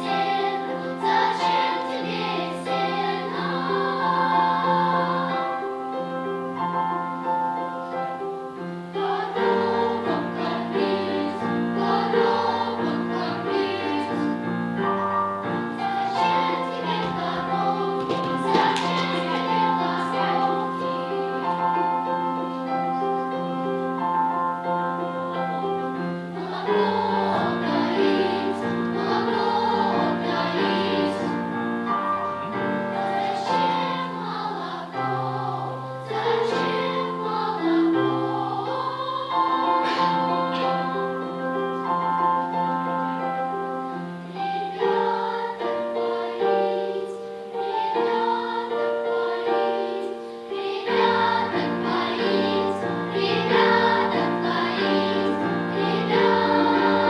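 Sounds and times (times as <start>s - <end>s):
children's choir singing: 0.0s - 57.0s.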